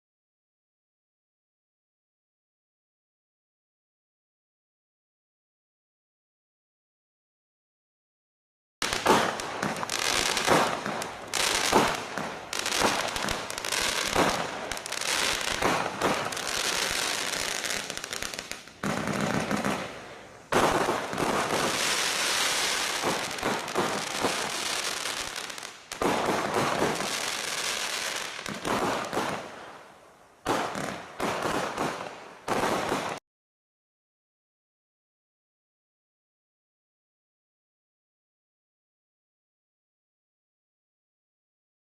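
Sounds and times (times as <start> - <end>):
fireworks launching and bursting: 8.8 - 33.2.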